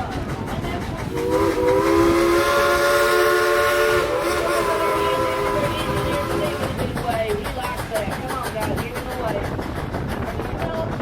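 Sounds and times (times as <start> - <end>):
steam locomotive chime whistle: 1.2 - 6.9.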